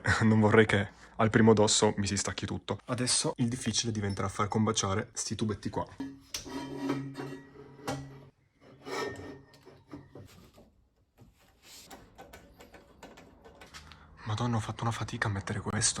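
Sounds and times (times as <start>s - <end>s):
pipe rubbing and scraping: 6.0s - 13.7s
knocks and clicks: 11.9s - 13.9s.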